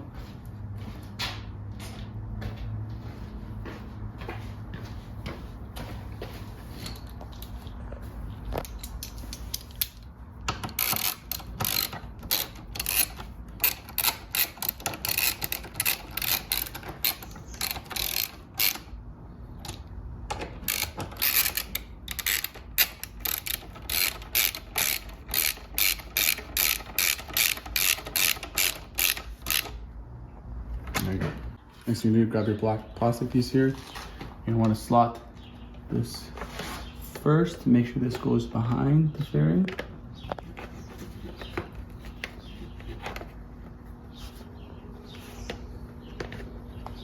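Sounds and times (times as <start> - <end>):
ratcheting wrench clicking: 8.6 - 18.9, 20.4 - 29.8.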